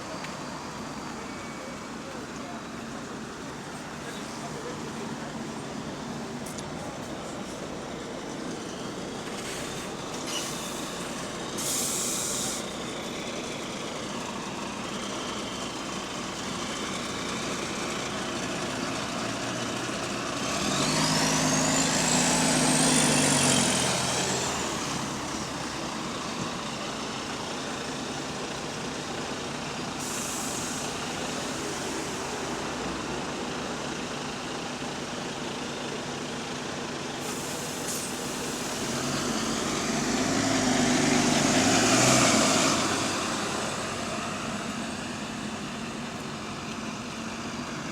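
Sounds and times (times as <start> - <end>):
bus engine running: 0.0 - 47.9
air brake hisses: 9.4 - 12.7, 30.0 - 32.2, 37.2 - 38.9.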